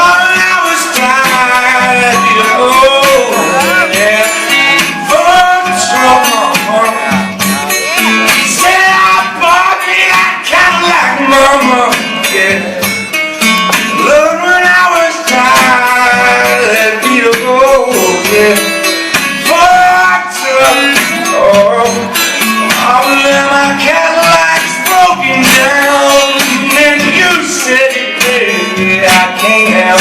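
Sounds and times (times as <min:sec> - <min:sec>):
bending lead guitar line: 0:00.0 - 0:30.0
strummed acoustic guitar: 0:00.0 - 0:30.0.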